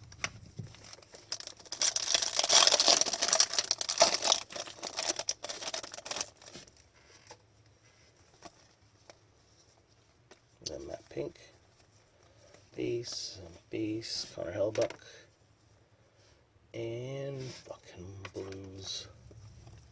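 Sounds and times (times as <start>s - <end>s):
wrapper tearing and crinkling: 0.7s - 7.4s.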